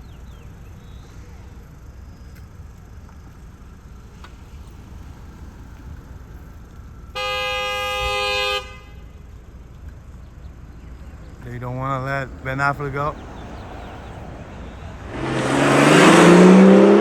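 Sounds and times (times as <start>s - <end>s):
low rumble of street noise: 0.0s - 17.0s
car horn blast: 7.1s - 9.3s.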